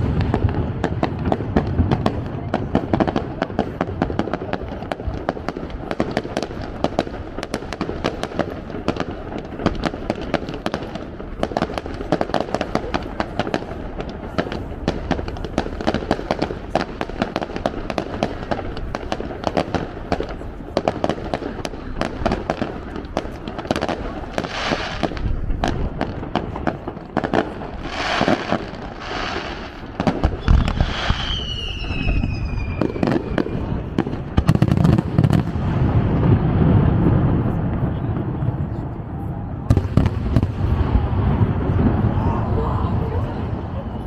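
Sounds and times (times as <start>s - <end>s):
crowd voices: 0.0s - 44.0s
fireworks crackling and popping: 0.0s - 44.0s.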